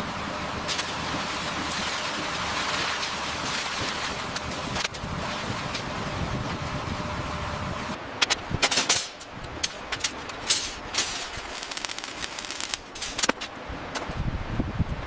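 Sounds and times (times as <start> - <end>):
steady rushing noise: 10.5 - 15.0.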